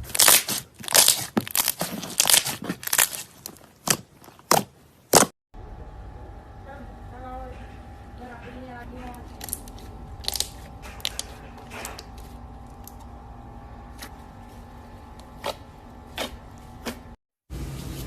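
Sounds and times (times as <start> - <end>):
faint steady hum: 5.6 - 17.0.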